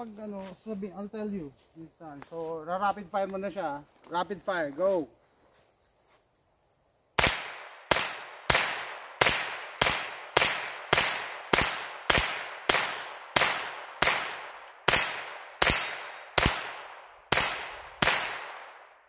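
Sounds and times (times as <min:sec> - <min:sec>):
rifle shots with ringing tail: 0:07.2 - 0:19.0.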